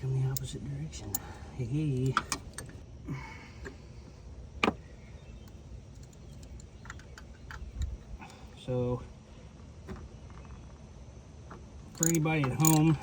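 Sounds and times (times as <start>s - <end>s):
tools clicking and tapping: 12.0s - 13.0s.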